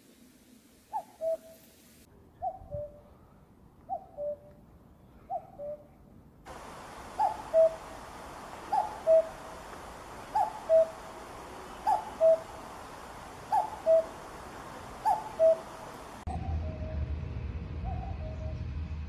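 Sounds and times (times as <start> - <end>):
steady background hiss: 0.0 - 2.1, 6.4 - 16.3
cuckoo calling: 0.9 - 1.7, 3.9 - 4.5, 6.5 - 16.9.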